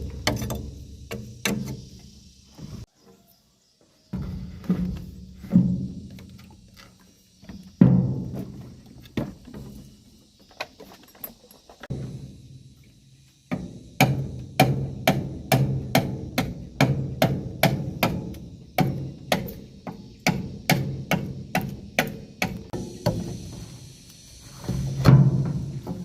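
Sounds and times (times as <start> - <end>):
bamboo knocks with hollow ring: 0.0 - 2.8, 4.2 - 6.6, 7.4 - 9.8, 13.5 - 23.6, 24.6 - 26.0.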